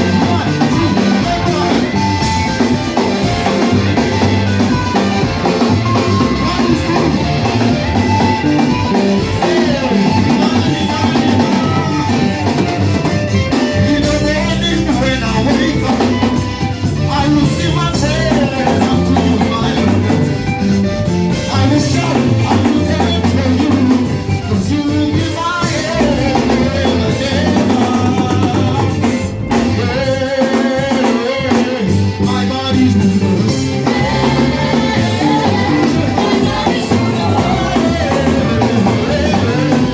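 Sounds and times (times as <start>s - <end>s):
singing: 0.0s - 12.9s, 21.4s - 39.9s
bass line: 0.0s - 39.9s
drum kit: 0.0s - 39.9s
guitar: 0.0s - 39.9s
worship band music: 0.0s - 39.9s.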